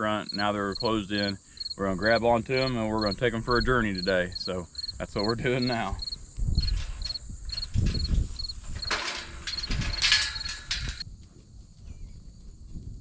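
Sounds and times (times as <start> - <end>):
insect chirping: 0.0 - 11.0
rustling and knocks from handling: 6.6 - 11.0.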